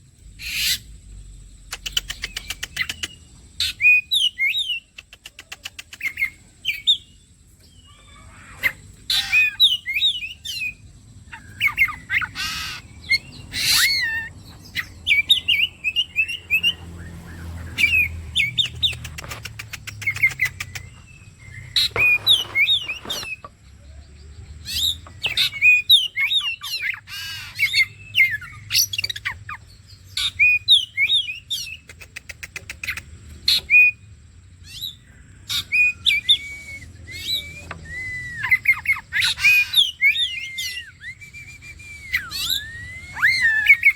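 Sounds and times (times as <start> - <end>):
songbird singing whistled phrases: 1.8 - 31.9, 34.6 - 43.9.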